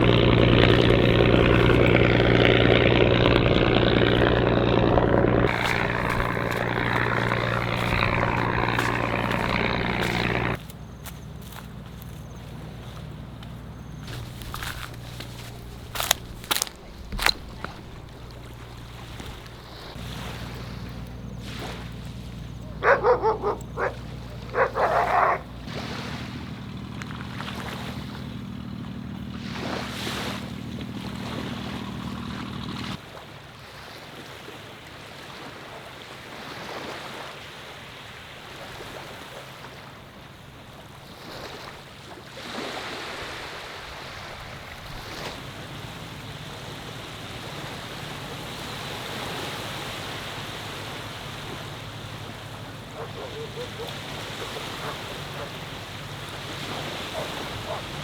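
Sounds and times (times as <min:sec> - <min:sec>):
steady low hum: 0:00.0 - 0:33.0
dog barking: 0:22.6 - 0:25.6, 0:52.9 - 0:55.7, 0:57.0 - 0:58.0.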